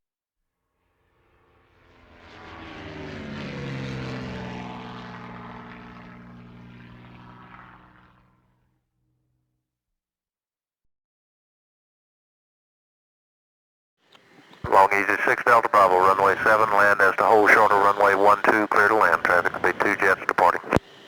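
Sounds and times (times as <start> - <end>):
propeller airplane flying past: 0.8 - 8.8, 14.3 - 21.0.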